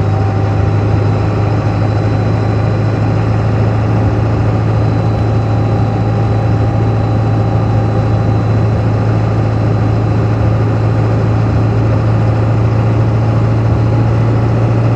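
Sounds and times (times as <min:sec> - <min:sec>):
diesel engine running steadily: 0:00.0 - 0:14.9.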